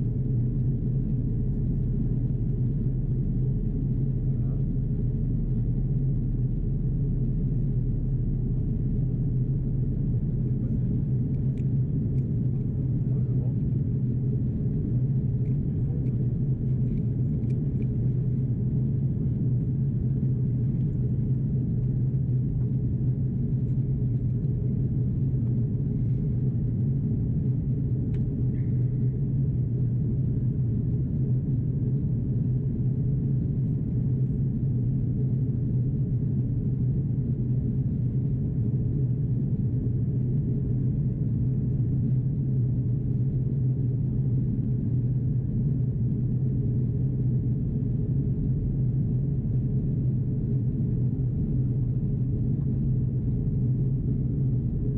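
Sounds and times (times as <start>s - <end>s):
airplane cabin engine drone: 0.0s - 54.9s.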